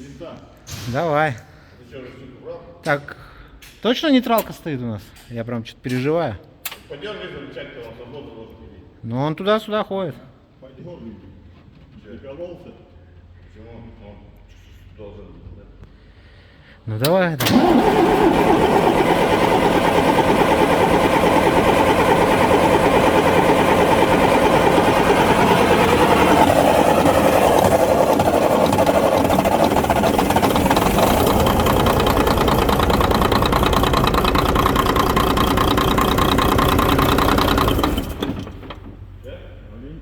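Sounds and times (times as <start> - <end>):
diesel truck engine running: 17.4 - 39.2.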